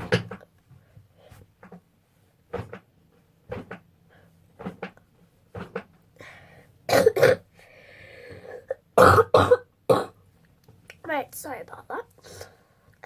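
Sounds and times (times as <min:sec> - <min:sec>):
child coughing: 0:06.9 - 0:07.4, 0:09.0 - 0:10.2.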